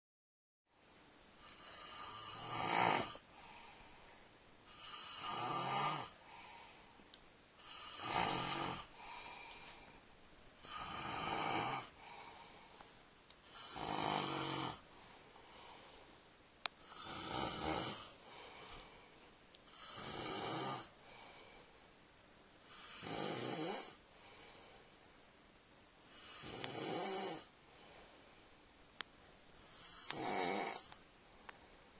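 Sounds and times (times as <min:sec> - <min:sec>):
quiet breathing: 0:00.8 - 0:22.0, 0:22.6 - 0:25.0, 0:26.0 - 0:28.6, 0:29.2 - 0:31.9
man snoring loudly: 0:01.4 - 0:03.3, 0:04.7 - 0:06.2, 0:07.6 - 0:09.0, 0:10.6 - 0:12.0, 0:13.5 - 0:14.8, 0:16.8 - 0:18.2, 0:19.7 - 0:20.9, 0:22.6 - 0:24.0, 0:26.1 - 0:27.5, 0:29.7 - 0:30.9.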